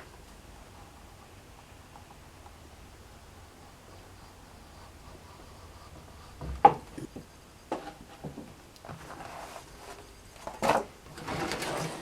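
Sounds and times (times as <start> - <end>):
tool knocking on workbench: 6.4 - 8.5.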